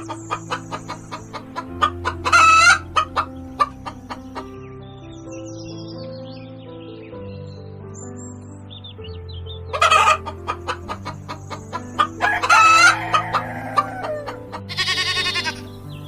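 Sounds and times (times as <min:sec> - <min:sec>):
chickens clucking: 0:00.0 - 0:04.6, 0:09.7 - 0:16.0
background music with held notes: 0:00.0 - 0:16.0
crowing call: 0:09.8 - 0:15.9.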